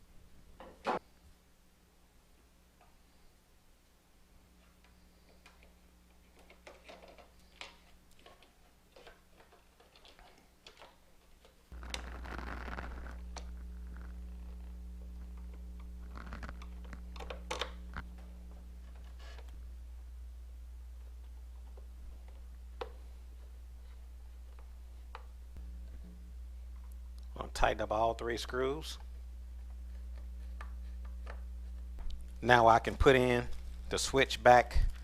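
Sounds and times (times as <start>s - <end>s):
low hum: 11.8s - 35.0s.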